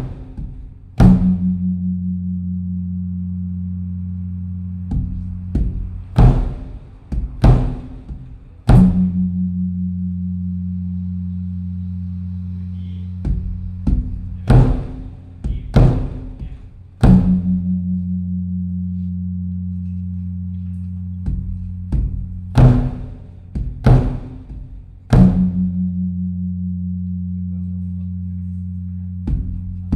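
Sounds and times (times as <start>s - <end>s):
temple drum beating: 0.0s - 3.0s, 4.6s - 10.6s, 13.1s - 19.4s, 21.0s - 26.9s, 29.1s - 29.9s.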